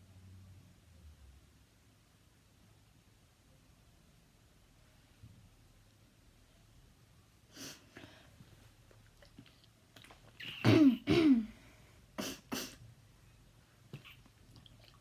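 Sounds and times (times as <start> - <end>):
child coughing: 10.4 - 11.6.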